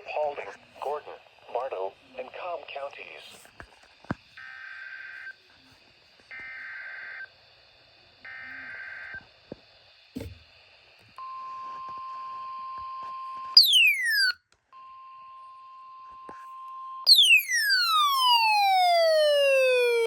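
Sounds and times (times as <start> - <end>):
steady warning alarm tone: 13.6 - 14.4, 17.1 - 20.0
falling electronic sweep: 17.1 - 20.0.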